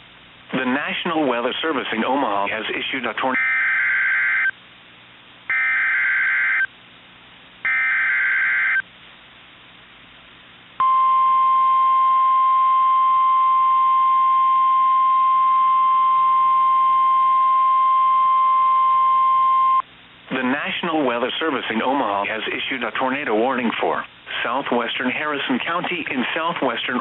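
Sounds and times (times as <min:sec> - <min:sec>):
steady alarm tone: 0:03.4 - 0:04.5, 0:05.5 - 0:06.7, 0:07.7 - 0:08.8.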